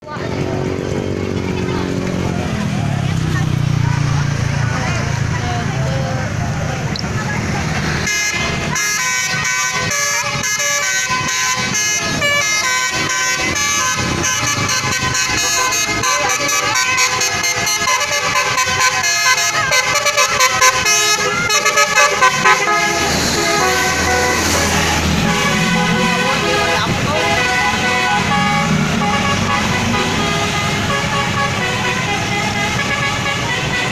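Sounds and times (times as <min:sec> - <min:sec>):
musical vehicle horn tune: 0:08.0 - 0:33.9.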